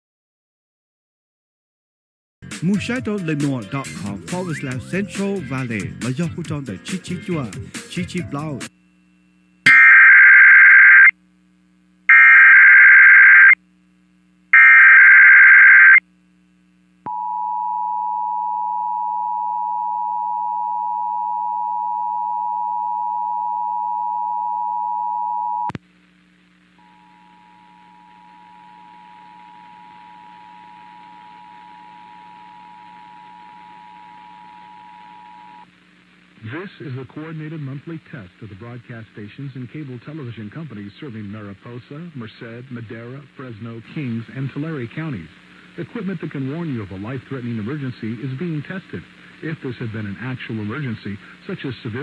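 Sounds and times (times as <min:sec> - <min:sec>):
screechy digital data bursts: 0:09.7 - 0:11.1, 0:12.1 - 0:13.6, 0:14.6 - 0:16.0
two-tone attention signal: 0:09.7 - 0:11.1, 0:12.1 - 0:13.6, 0:14.6 - 0:16.0.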